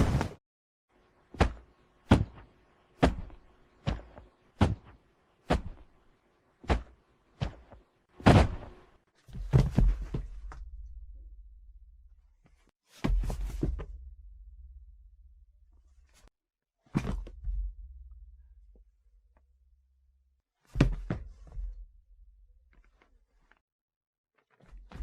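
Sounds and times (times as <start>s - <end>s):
heavy body-fall thuds: 6.6s - 10.5s.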